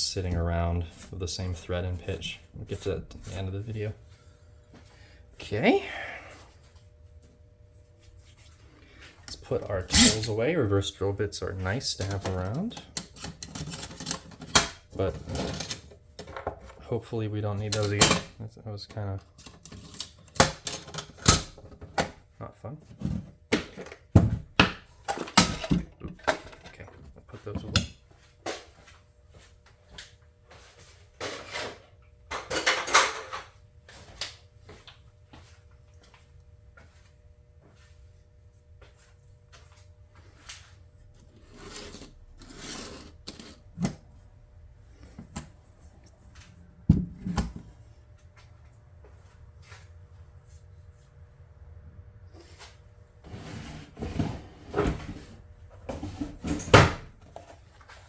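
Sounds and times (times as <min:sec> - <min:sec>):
faint steady hum: 0:00.0 - 0:58.0
tools rattling: 0:09.8 - 0:10.4
hand tools clattering: 0:09.9 - 0:10.4.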